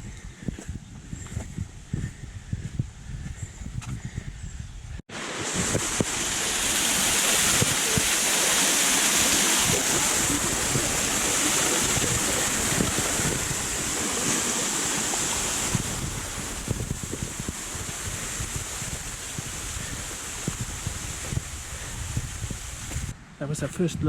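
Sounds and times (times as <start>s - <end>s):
small waterfall rushing and splashing: 5.1s - 23.1s.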